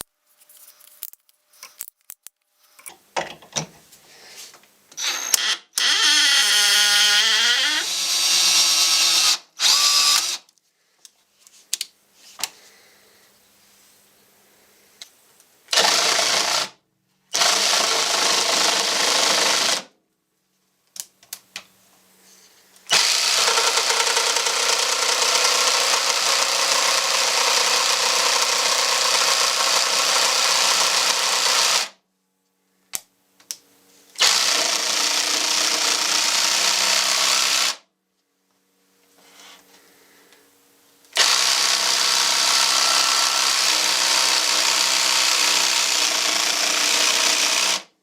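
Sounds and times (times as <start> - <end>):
cordless power tool running: 5.0 - 10.4, 15.7 - 16.8, 17.4 - 19.9, 22.9 - 32.0, 34.2 - 37.8, 41.2 - 47.9.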